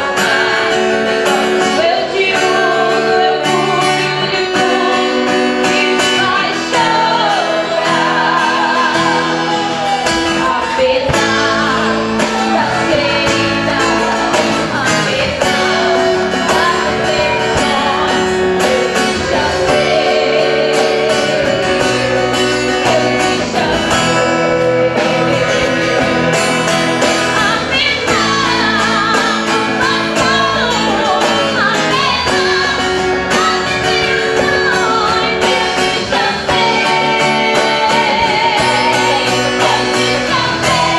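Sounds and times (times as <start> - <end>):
guitar accompaniment: 0.0 - 40.9
vocal group singing: 0.0 - 40.9.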